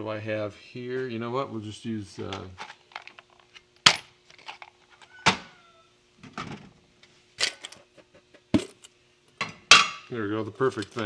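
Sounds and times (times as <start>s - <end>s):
faint steady hum: 0.0s - 11.0s
hard objects knocking and clanking: 8.4s - 8.8s.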